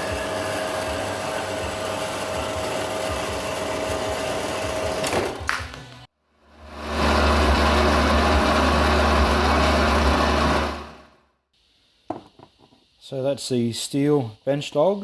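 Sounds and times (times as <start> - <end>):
power tool motor whirring: 0.0 - 5.3.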